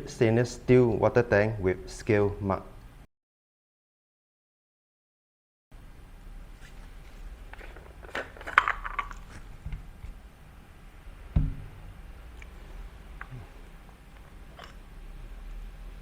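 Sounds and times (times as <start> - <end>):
dull thump: 11.3 - 11.9.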